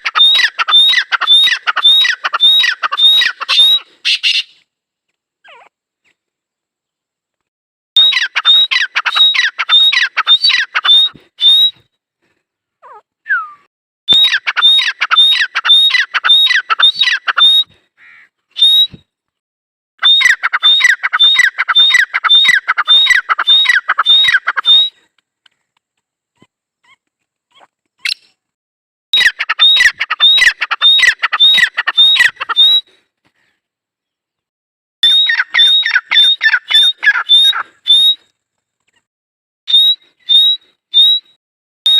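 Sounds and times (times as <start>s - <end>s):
francolin calling: 0.0s - 4.5s, 8.0s - 11.7s, 12.8s - 18.8s, 20.0s - 24.9s, 29.2s - 32.9s, 35.0s - 38.2s.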